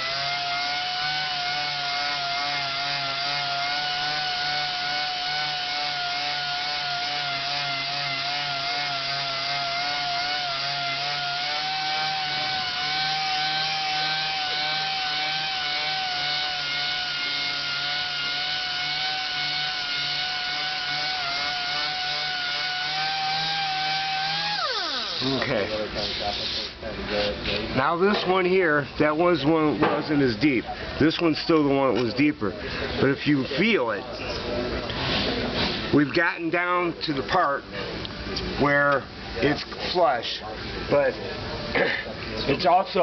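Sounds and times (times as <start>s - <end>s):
sander motor whine: 0.0s - 25.4s.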